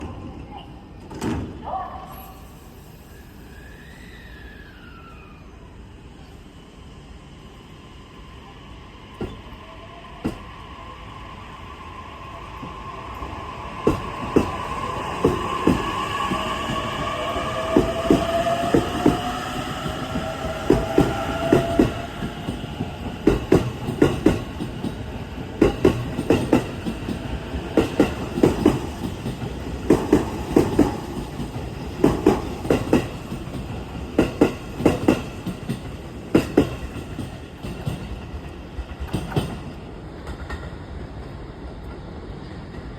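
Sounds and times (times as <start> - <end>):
wheels clacking over rail joints: 17.7 - 40.8.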